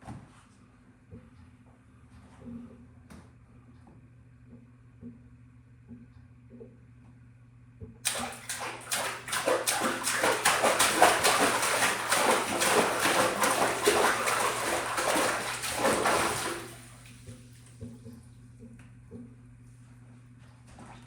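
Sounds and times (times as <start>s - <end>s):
water splashing in a small tub: 8.0s - 18.0s.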